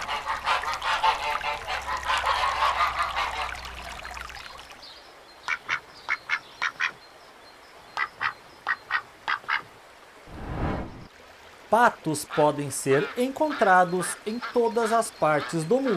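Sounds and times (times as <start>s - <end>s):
flock of ducks calling: 0.0s - 3.7s.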